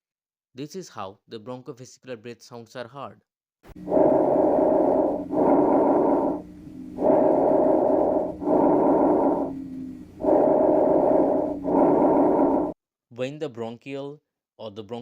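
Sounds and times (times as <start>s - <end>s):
breath sounds through stethoscope: 3.7s - 12.8s.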